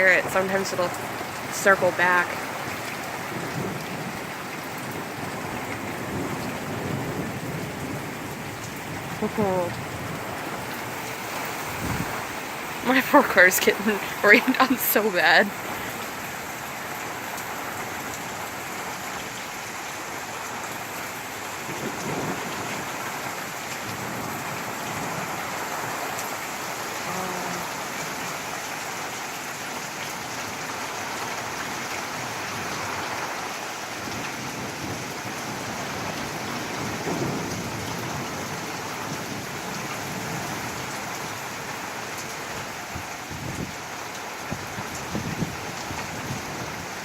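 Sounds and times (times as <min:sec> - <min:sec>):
thunder rumbling: 0:00.0 - 0:15.8, 0:34.0 - 0:40.8
heavy rain pouring: 0:00.0 - 0:47.0.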